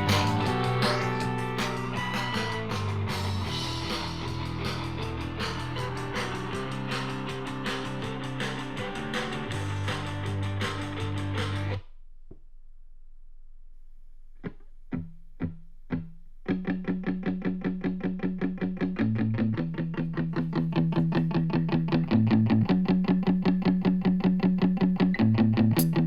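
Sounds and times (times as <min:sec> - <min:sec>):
electric guitar music from speaker: 0:00.0 - 0:11.8, 0:14.5 - 0:26.0.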